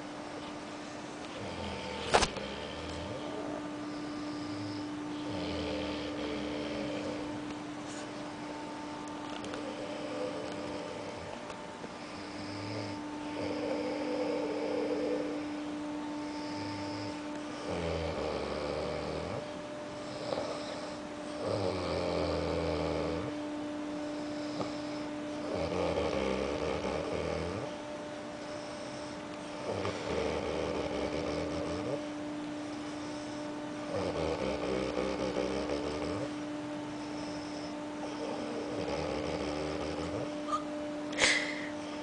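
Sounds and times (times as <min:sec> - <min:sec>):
steady whining tone: 0:00.0 - 0:42.0
man snoring: 0:01.4 - 0:07.4, 0:09.5 - 0:11.3, 0:12.0 - 0:15.5, 0:16.2 - 0:19.4, 0:20.0 - 0:23.3, 0:24.2 - 0:27.7, 0:28.6 - 0:32.0, 0:33.9 - 0:36.3, 0:37.1 - 0:40.6.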